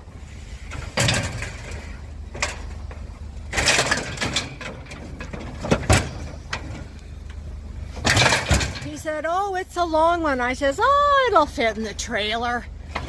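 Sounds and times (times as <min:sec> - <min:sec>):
scrap metal knocking and scraping: 0:00.0 - 0:09.1
steady low rumble: 0:00.0 - 0:13.0.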